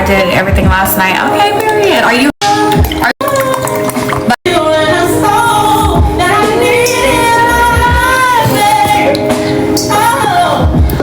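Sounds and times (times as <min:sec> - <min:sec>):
steady low beat: 0:04.4 - 0:11.0.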